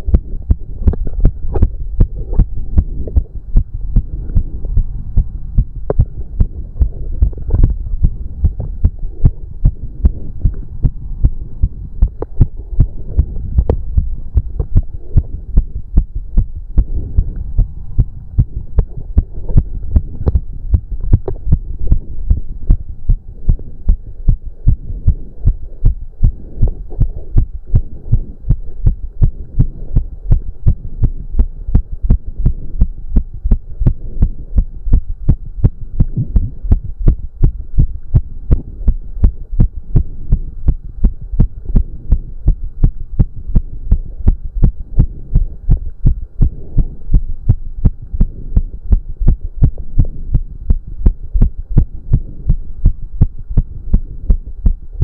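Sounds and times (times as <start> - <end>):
faint steady hum: 0.0 - 55.0
heart beating fast: 0.0 - 55.0.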